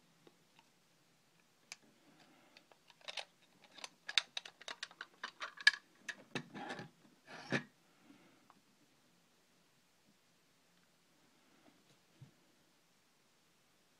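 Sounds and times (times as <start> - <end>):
packaging rustling: 2.6 - 5.9.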